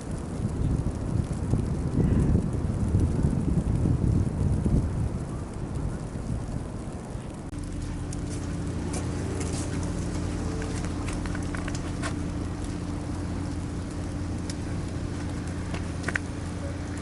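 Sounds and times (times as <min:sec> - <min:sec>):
light clicks and crackles: 0:00.0 - 0:17.0
vehicle engine hum: 0:06.0 - 0:17.0.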